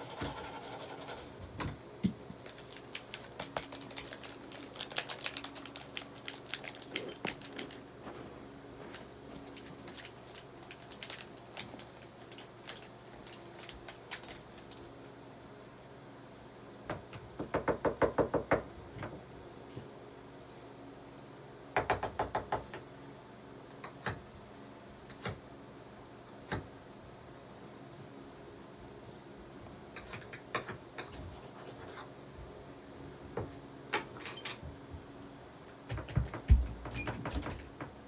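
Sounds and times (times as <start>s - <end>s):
faint steady hum: 0.0s - 38.0s.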